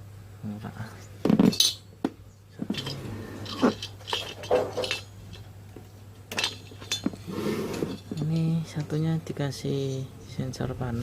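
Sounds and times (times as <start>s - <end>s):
low steady hum: 0.0s - 11.0s
metal tools clinking and knocking: 1.3s - 1.9s, 2.6s - 5.6s, 6.3s - 8.8s.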